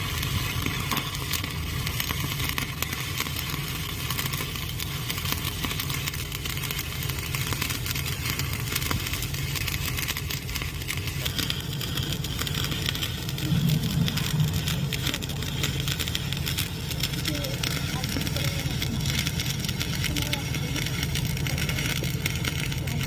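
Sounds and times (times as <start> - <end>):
welding arc crackling and sizzling: 0.0 - 23.0
low hum: 10.0 - 23.0.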